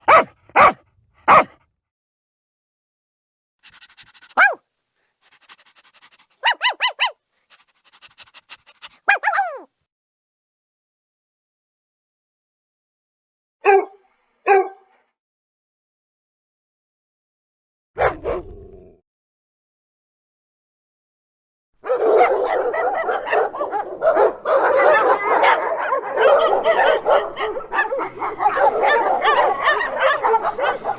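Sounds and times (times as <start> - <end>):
dog barking: 0.0 - 1.6, 4.2 - 4.6, 6.4 - 7.2, 9.0 - 9.7, 13.6 - 15.0, 18.0 - 18.9, 21.8 - 30.9
dog panting: 3.6 - 9.1, 22.2 - 30.9.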